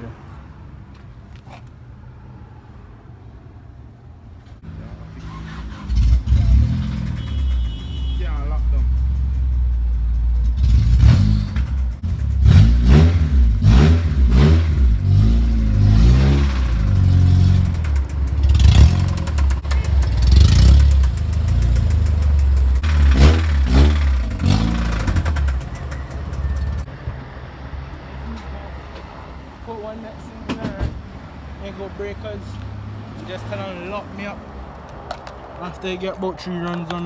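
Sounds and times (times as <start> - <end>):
car engine revving: 4.6 - 26.9.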